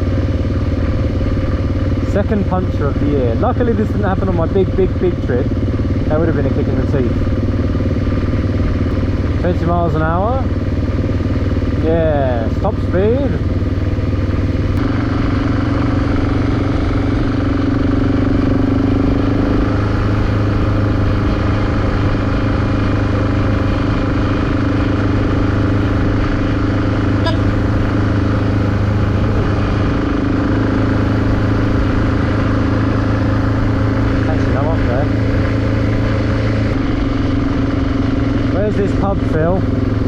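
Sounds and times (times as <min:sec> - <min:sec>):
motorcycle engine droning: 0:00.0 - 0:40.0.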